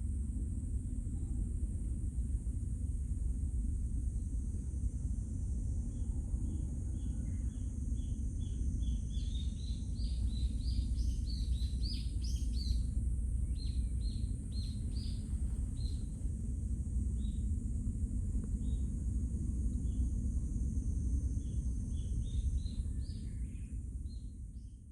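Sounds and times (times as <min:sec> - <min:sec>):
constant high hiss: 0:00.0 - 0:24.9
low outdoor rumble: 0:00.0 - 0:24.9
small birds chirping: 0:13.5 - 0:16.2.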